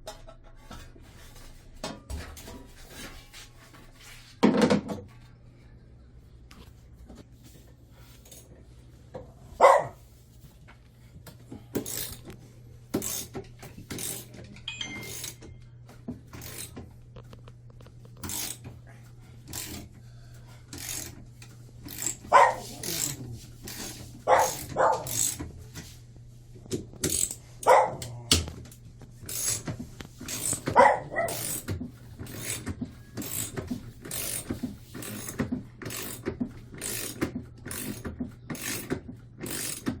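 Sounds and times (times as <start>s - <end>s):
steady low hum: 5.1s - 37.1s
tools and metal parts clanking: 11.6s - 12.4s, 13.0s - 17.4s, 18.2s - 18.8s, 19.5s - 19.9s, 20.7s - 26.0s, 26.7s - 40.0s.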